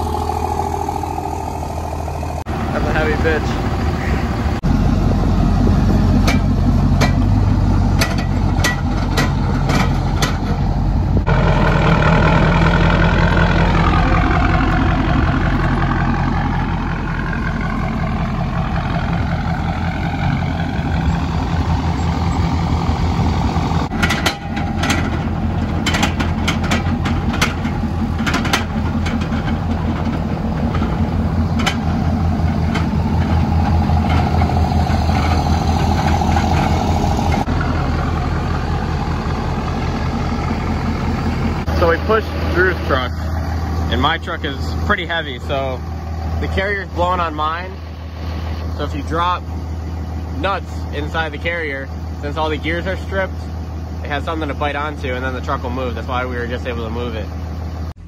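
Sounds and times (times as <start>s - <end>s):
truck engine running: 0.0s - 58.0s
sharp clicks and knocks: 6.2s - 10.7s, 23.9s - 37.5s.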